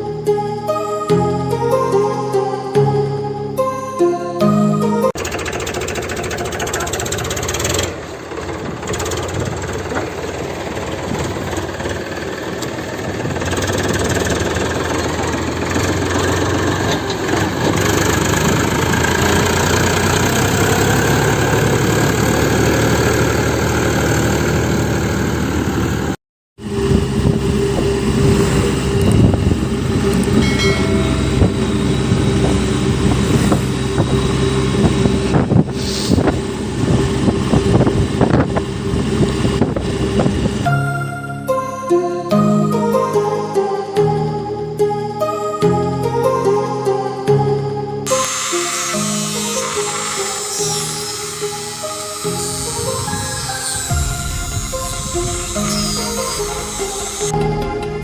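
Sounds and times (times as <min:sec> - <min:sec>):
small motor running: 0:05.2 - 0:16.5, 0:48.1 - 0:54.0.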